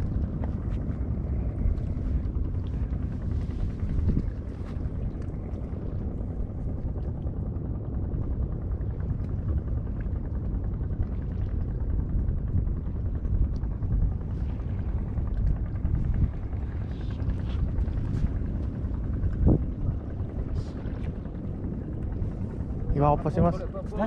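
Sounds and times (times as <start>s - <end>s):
boat engine rumbling: 0.0s - 24.0s.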